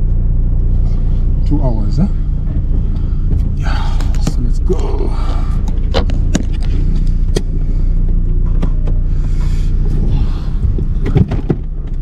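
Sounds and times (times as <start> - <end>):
car engine and road rumble: 0.0 - 12.0
sharp clicks and knocks: 5.6 - 7.6, 10.6 - 12.0.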